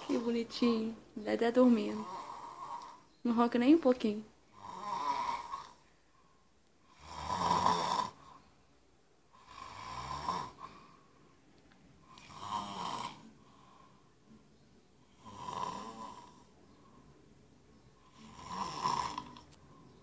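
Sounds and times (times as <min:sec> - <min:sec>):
man snoring: 0:02.0 - 0:03.0, 0:04.5 - 0:05.8, 0:06.9 - 0:08.4, 0:09.3 - 0:10.8, 0:12.2 - 0:13.8, 0:15.1 - 0:16.5, 0:18.0 - 0:19.4
quiet breathing: 0:04.5 - 0:07.1, 0:08.1 - 0:20.0.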